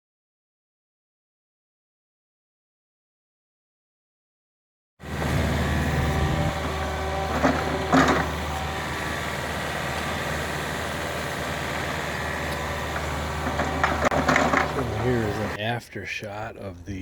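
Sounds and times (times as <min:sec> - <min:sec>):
excavator diesel engine running: 0:05.0 - 0:15.6
metallic clanks: 0:07.2 - 0:08.6, 0:12.5 - 0:15.6.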